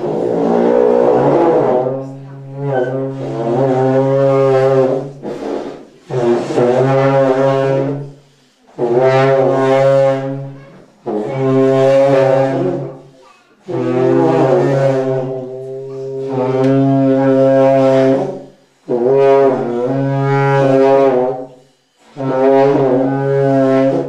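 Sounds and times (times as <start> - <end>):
long horns blasting: 0.0 - 24.0.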